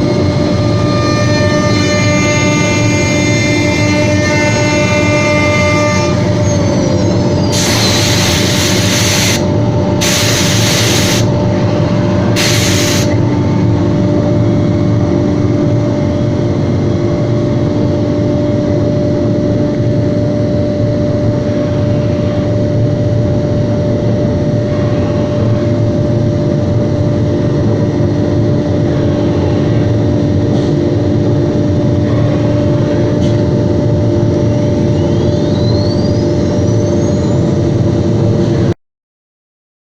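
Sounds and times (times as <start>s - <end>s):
loud hiss bursts: 7.5s - 11.4s, 12.4s - 13.2s.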